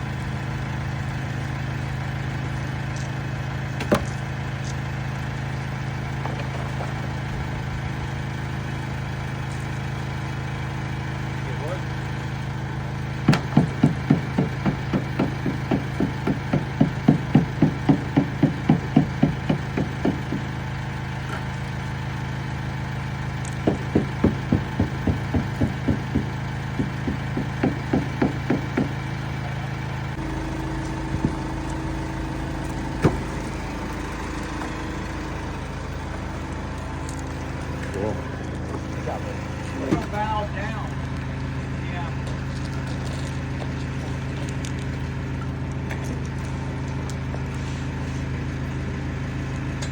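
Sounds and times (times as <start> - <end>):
travel lift engine running: 0.0 - 49.9
sharp knocks: 13.2 - 20.6, 23.6 - 29.0, 31.1 - 31.5, 32.9 - 33.6
regular knocking: 23.6 - 29.0.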